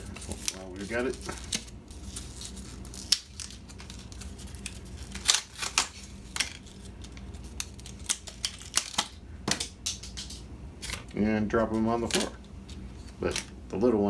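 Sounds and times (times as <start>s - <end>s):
plastic packaging crackling: 0.0s - 13.6s.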